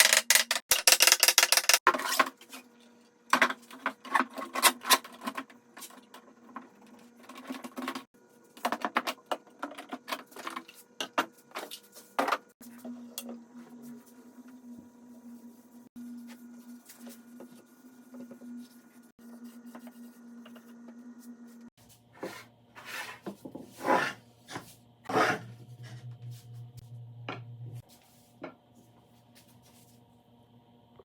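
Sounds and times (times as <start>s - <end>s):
low steady hum: 24.4s - 31.0s.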